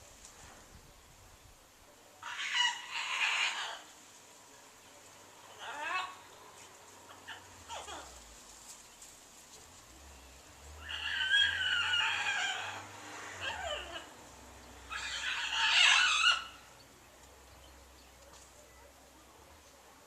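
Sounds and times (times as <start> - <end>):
harsh bird screeches: 10.8 - 14.1, 14.9 - 16.7.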